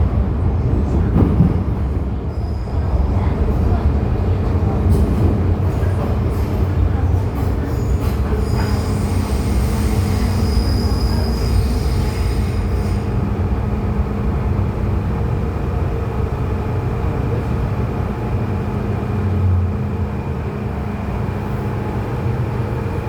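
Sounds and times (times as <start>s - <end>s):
metro train rumbling: 0.0s - 23.0s
high squeal from running gear: 8.4s - 13.1s.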